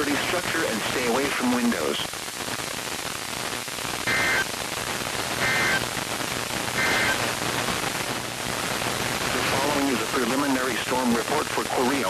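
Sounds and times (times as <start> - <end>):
weather radio broadcast: 0.0 - 2.1, 5.3 - 5.8, 6.6 - 8.0, 9.2 - 12.0
radio static: 0.0 - 12.0
two-tone digital data bursts: 4.1 - 4.5, 5.4 - 5.8, 6.8 - 7.2.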